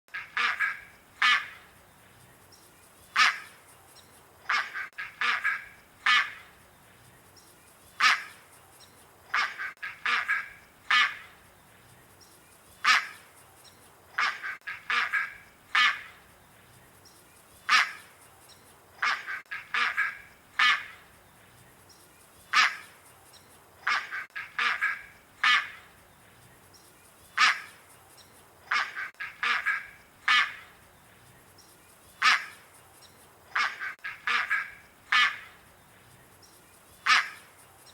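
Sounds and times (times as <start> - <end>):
ibis honking calls: 0.1 - 1.6, 3.1 - 3.6, 4.5 - 6.5, 8.0 - 8.4, 9.3 - 11.4, 12.8 - 13.3, 14.2 - 16.2, 17.7 - 18.1, 19.0 - 21.0, 22.5 - 23.0, 23.8 - 25.9, 27.4 - 27.8, 28.7 - 30.8, 32.2 - 32.6, 33.5 - 35.6, 37.0 - 37.5.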